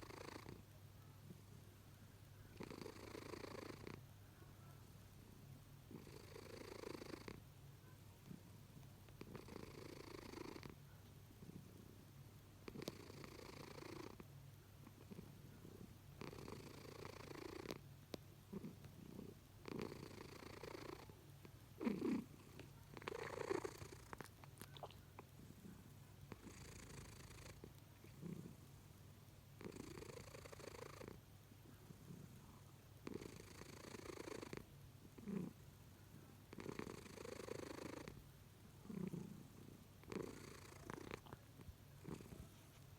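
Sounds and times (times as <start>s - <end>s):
cat snoring faintly: 0.0s - 0.7s, 2.5s - 4.1s, 5.9s - 12.0s, 12.6s - 17.9s, 18.5s - 21.2s, 21.8s - 28.8s, 29.6s - 38.2s, 38.8s - 42.9s.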